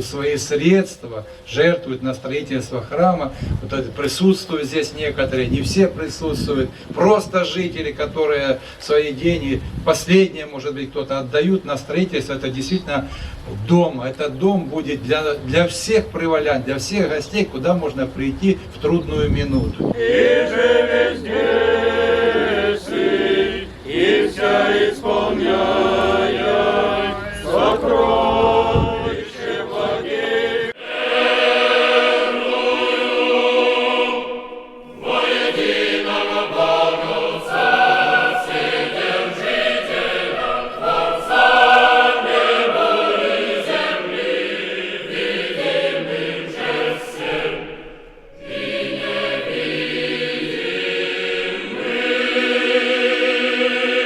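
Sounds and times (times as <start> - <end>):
church choir chanting: 16.2 - 54.0.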